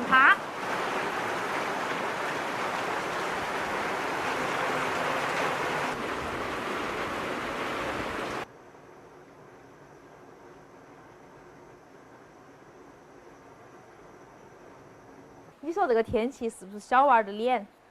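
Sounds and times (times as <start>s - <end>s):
heavy rain falling: 0.0s - 8.5s.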